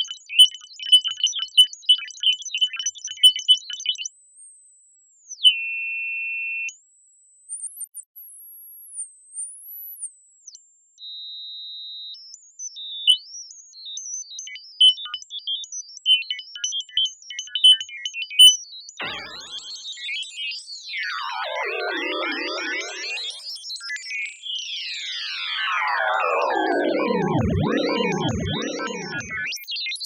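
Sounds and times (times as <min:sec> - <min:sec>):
robot beeps and whistles: 0:19.0 - 0:20.0, 0:20.9 - 0:23.6, 0:24.7 - 0:29.6.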